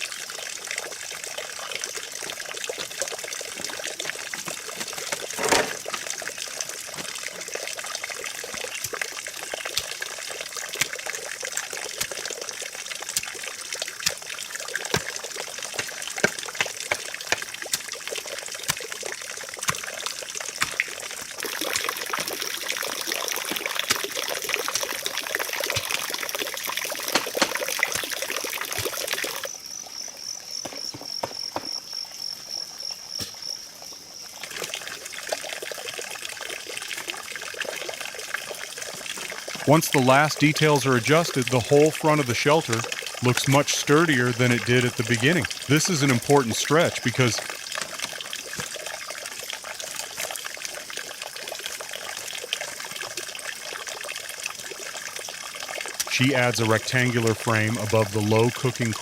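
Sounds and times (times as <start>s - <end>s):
water trickling: 0.0s - 59.0s
clicks and knocks: 4.4s - 6.1s, 27.0s - 28.1s.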